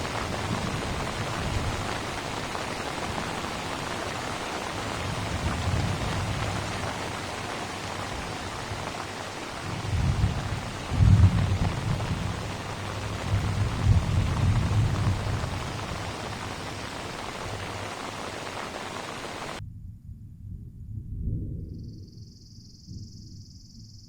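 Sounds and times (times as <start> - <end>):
heavy rain hissing: 0.0 - 19.6
deep low rumbles: 19.6 - 22.3.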